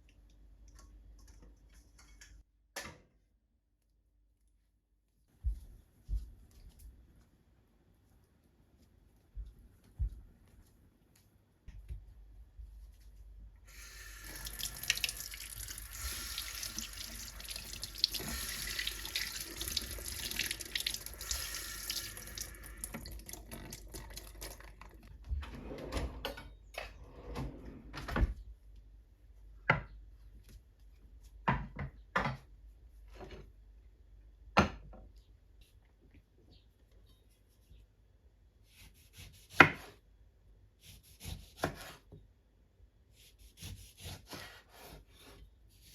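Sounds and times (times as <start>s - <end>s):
tap water running into sink: 13.9s - 25.0s.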